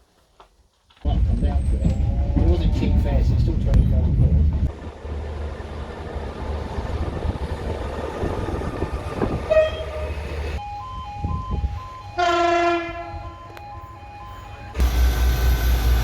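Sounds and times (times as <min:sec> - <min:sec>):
rumbling train: 0:01.0 - 0:16.0
train horn blast: 0:09.4 - 0:10.4, 0:12.2 - 0:13.3.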